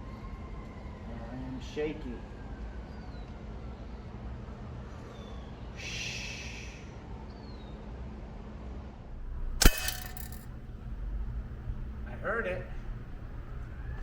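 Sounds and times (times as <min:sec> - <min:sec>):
breathy hiss: 0:05.8 - 0:06.9
air rifle shot: 0:09.1 - 0:10.7.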